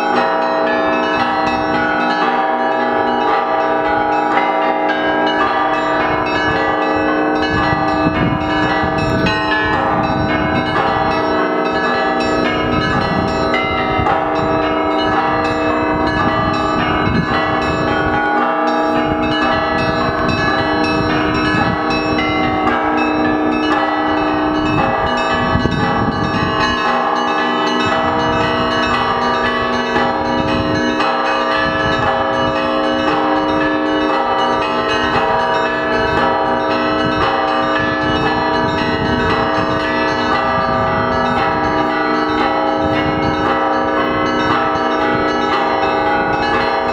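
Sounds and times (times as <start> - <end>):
church bells pealing: 0.0 - 46.9.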